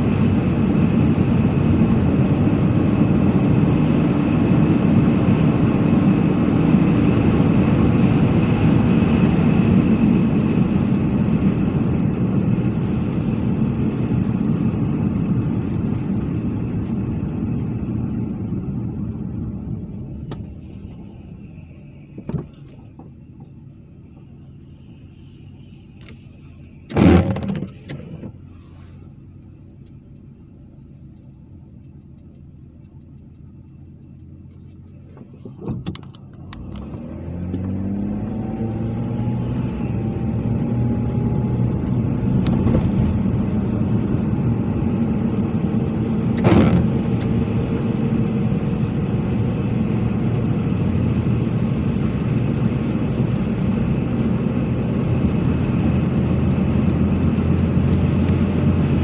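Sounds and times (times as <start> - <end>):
car engine starting and running: 0.0 - 59.0.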